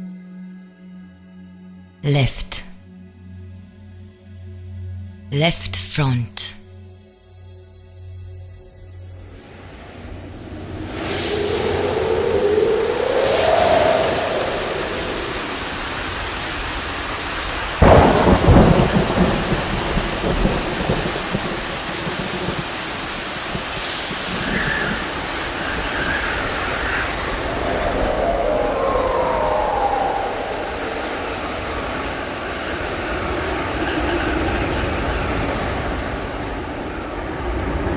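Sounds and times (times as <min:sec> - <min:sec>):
steady rain: 0:09.2 - 0:37.9
thunderclap rumbling: 0:10.4 - 0:37.9.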